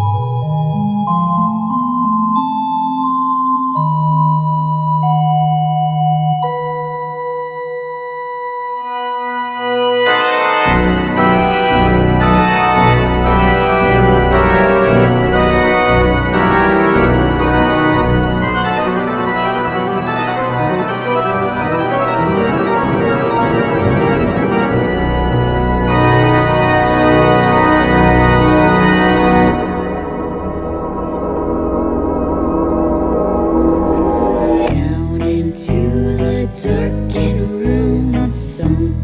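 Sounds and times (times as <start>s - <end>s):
organ-like keyboard chords: 0.0s - 39.0s
bass line: 10.5s - 39.0s.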